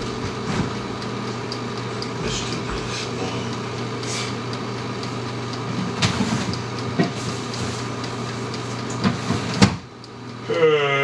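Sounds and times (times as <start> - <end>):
appliance hum: 0.0 - 11.0.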